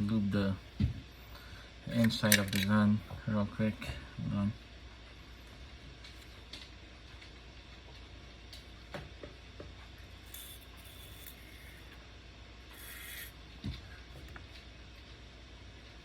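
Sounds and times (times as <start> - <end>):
short hissing rubs: 12.7 - 13.4.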